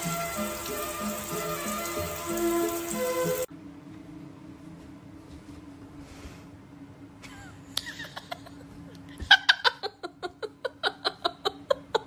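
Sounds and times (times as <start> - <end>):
person laughing: 7.2 - 12.0.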